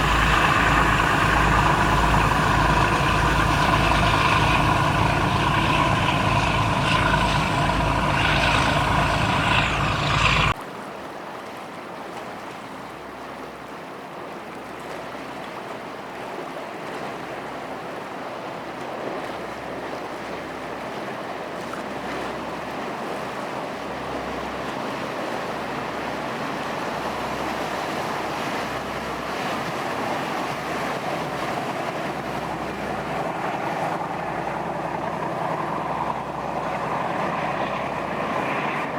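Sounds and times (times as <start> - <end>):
boat engine running: 0.0 - 10.6, 19.3 - 38.9
water wash: 0.0 - 10.6, 15.4 - 38.9
wind: 0.0 - 38.9.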